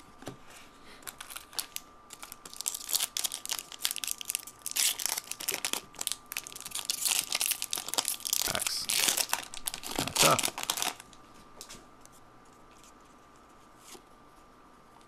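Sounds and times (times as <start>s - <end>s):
plastic wrapping crinkling and tearing: 1.0s - 11.2s.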